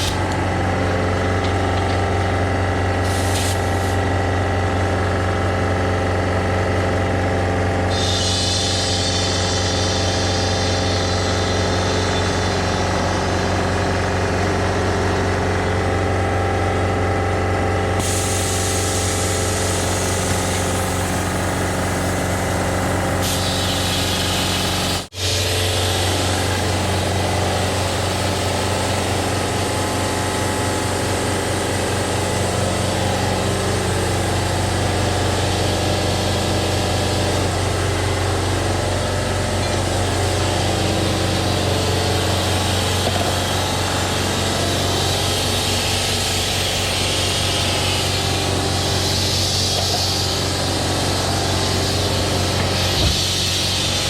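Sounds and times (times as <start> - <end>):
air compressor humming: 0.0 - 54.0
high air hiss: 7.9 - 12.5, 18.0 - 22.2, 23.2 - 28.5, 39.8 - 54.0.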